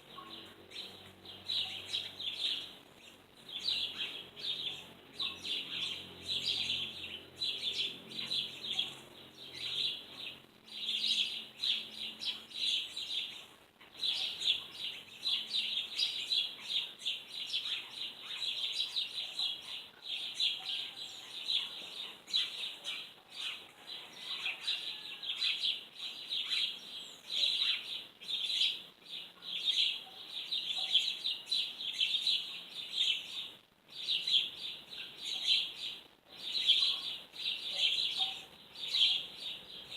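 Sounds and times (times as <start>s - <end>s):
small birds chirping: 0.0s - 39.9s.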